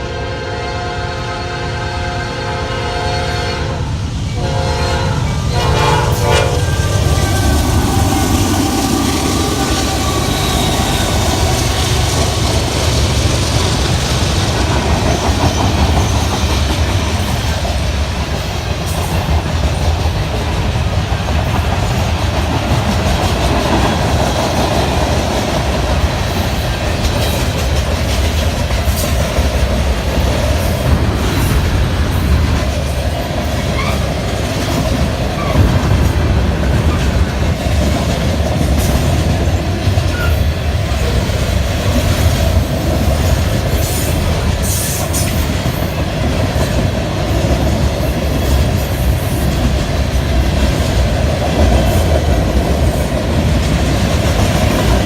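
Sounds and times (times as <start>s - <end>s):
train horn chord: 0.0s - 11.8s
train rumble and wheel clatter: 0.0s - 55.0s.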